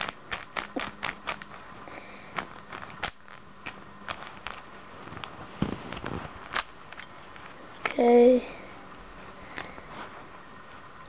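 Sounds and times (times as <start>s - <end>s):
speed cube clicking: 0.0s - 1.7s, 2.3s - 4.7s, 6.4s - 7.0s.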